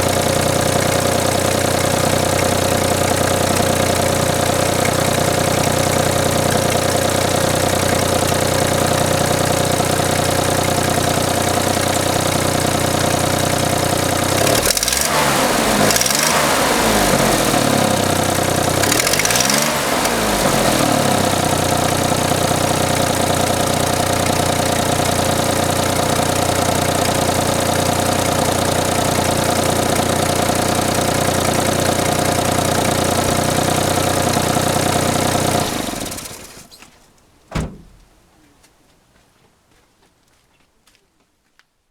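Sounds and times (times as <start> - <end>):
engine idling with clattering rattle: 0.0 - 36.8, 37.5 - 38.2
engine revving: 14.1 - 23.0, 32.7 - 36.6.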